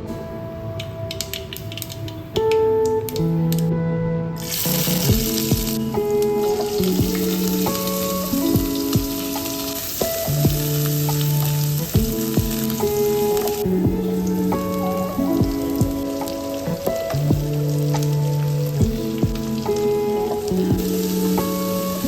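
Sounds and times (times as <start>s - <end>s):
plucked guitar music: 0.0s - 22.0s
food sizzling in a pan: 4.4s - 22.0s.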